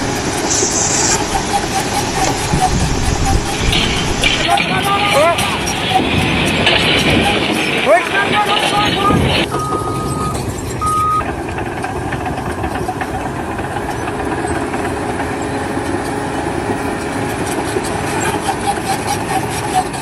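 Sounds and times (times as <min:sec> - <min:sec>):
engine running: 0:00.0 - 0:20.0
short high beep: 0:09.5 - 0:11.2.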